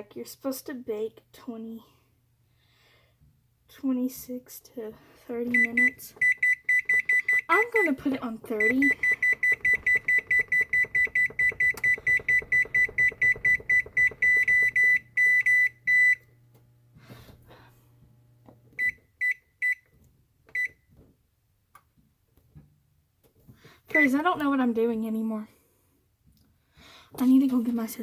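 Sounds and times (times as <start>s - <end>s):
oven control panel beeping fast: 5.5s - 16.3s, 18.8s - 19.8s.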